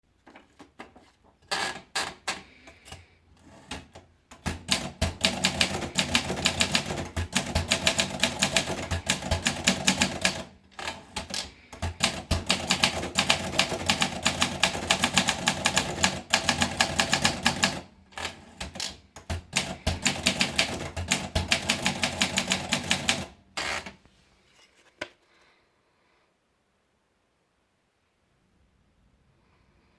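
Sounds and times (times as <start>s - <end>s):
manual typewriter typing: 1.5s - 24.0s.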